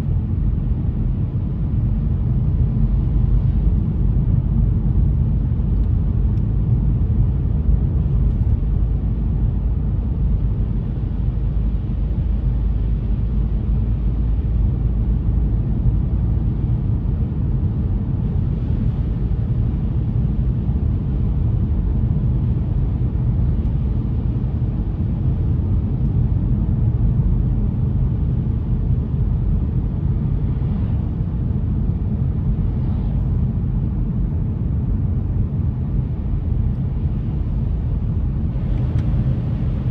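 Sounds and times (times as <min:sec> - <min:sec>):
car driving on wet road: 0:10.2 - 0:25.8, 0:28.0 - 0:31.5, 0:35.8 - 0:39.9.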